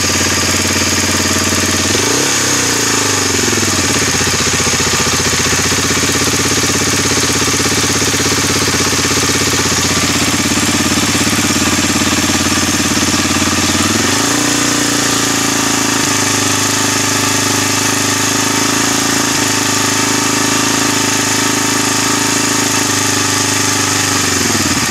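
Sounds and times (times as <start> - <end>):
motorcycle engine idling and revving: 0.0 - 24.9.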